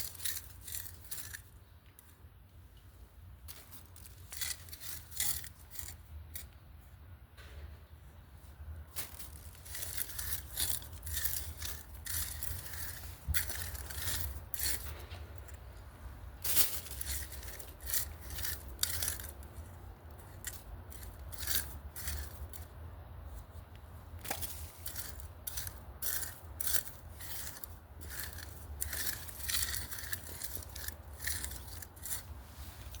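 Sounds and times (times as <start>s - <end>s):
hand tool scraping soil: 0.0s - 1.5s, 3.5s - 6.6s, 8.9s - 15.6s, 16.4s - 22.7s, 24.2s - 33.0s.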